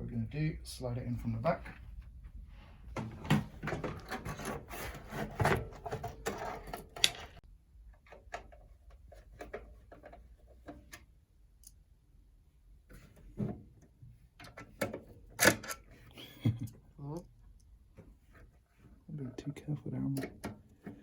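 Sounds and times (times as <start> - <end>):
metal and plastic scraping: 3.0 - 7.4.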